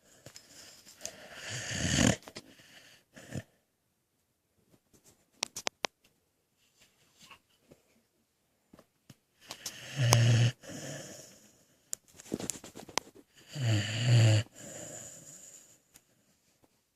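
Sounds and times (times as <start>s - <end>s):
dog snoring: 1.1s - 3.6s, 9.6s - 11.6s, 13.4s - 15.8s
dog breathing: 13.3s - 15.8s.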